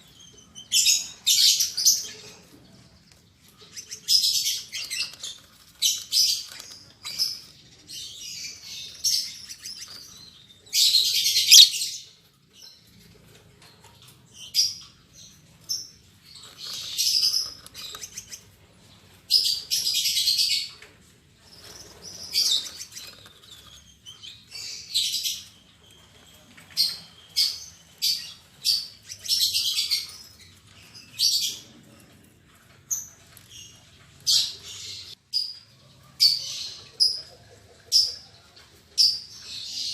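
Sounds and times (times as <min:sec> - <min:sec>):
lovebirds chirping: 0:00.0 - 0:39.9
harsh bird chattering: 0:11.1 - 0:11.9.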